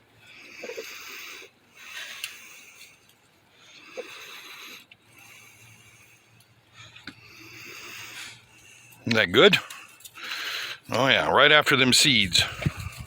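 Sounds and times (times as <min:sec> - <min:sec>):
chickens pecking: 0:12.2 - 0:13.0.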